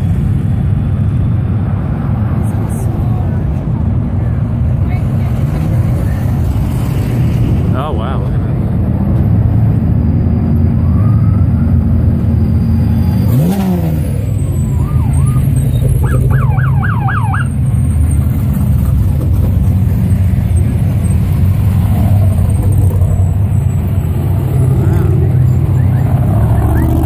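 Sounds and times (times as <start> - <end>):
off-road vehicle engines running: 0.0 - 27.0
engine revving: 10.9 - 17.5, 18.5 - 27.0
police siren yelp: 14.2 - 17.6, 25.5 - 27.0.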